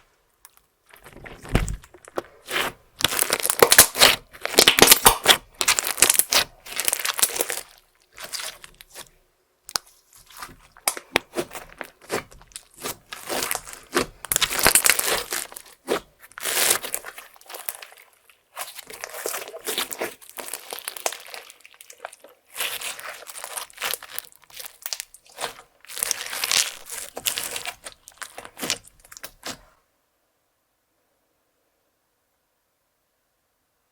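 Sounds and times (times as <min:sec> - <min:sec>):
slime squelching and crackling: 0:00.9 - 0:29.7.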